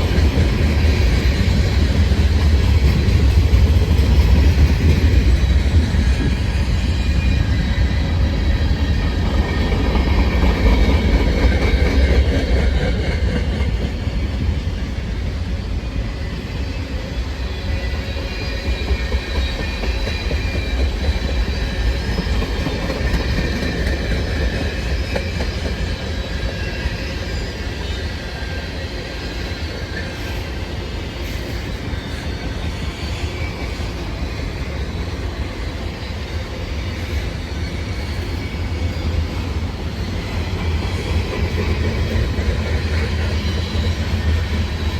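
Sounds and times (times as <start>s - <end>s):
train rumble: 0.0s - 44.9s
train wheels clicking on rails: 0.0s - 44.9s.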